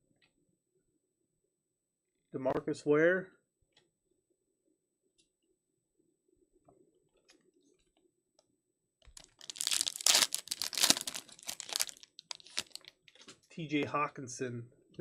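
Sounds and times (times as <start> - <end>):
foil wrapper crinkling: 9.1 - 13.2.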